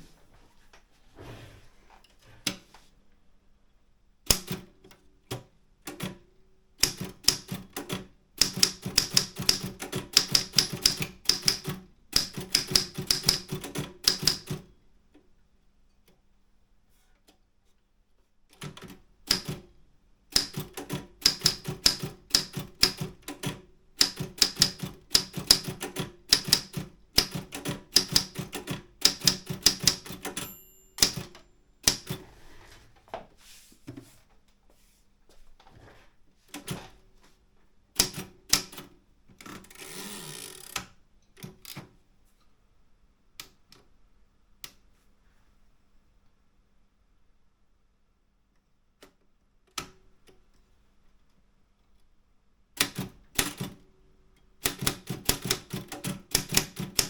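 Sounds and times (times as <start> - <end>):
typewriter key strikes: 4.3 - 4.7, 6.8 - 14.6, 18.6 - 19.7, 20.3 - 32.2, 54.6 - 57.0.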